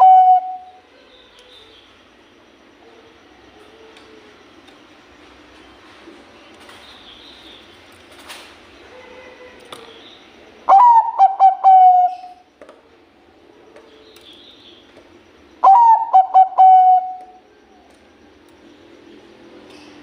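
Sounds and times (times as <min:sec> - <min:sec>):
dove cooing song: 0:00.0 - 0:00.8, 0:10.7 - 0:12.5, 0:15.6 - 0:17.9.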